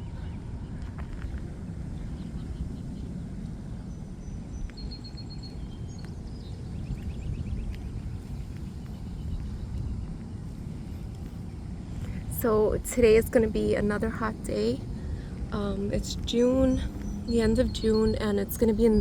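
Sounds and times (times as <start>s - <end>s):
low outdoor rumble: 0.0s - 19.0s
small birds chirping: 12.0s - 19.0s.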